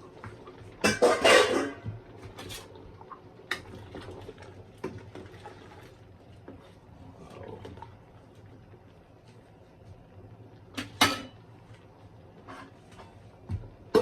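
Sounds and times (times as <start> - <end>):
low kitchen hum: 0.0 - 14.0.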